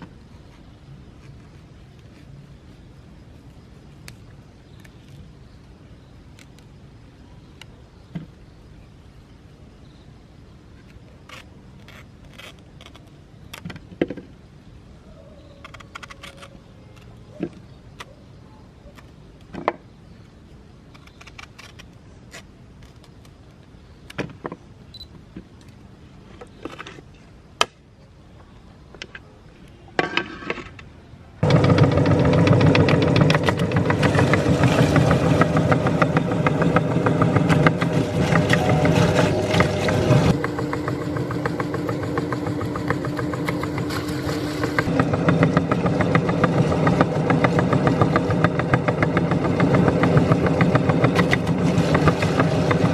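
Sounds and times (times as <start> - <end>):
electric meat grinder motor humming: 31.4 - 52.9.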